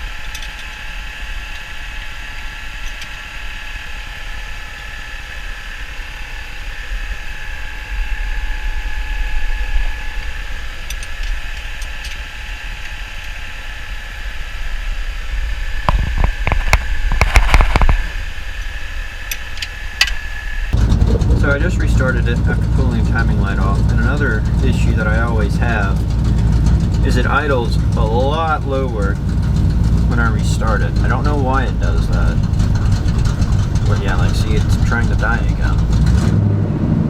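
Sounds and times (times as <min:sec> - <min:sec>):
engine knocks and clatter: 0:20.7 - 0:37.0
steady whine: 0:20.8 - 0:36.3
truck engine idling: 0:20.8 - 0:37.0.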